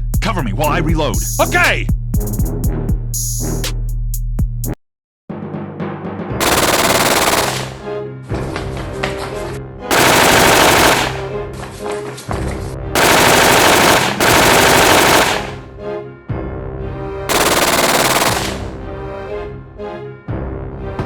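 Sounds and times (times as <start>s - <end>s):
background music: 5.4s - 21.0s
automatic gunfire bursts: 6.4s - 7.9s, 9.9s - 11.4s, 13.0s - 15.7s, 17.3s - 18.8s.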